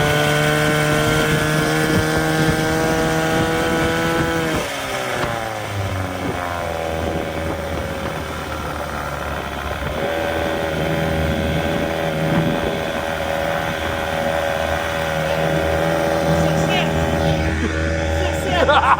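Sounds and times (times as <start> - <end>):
outboard motor running: 0.0 - 18.9.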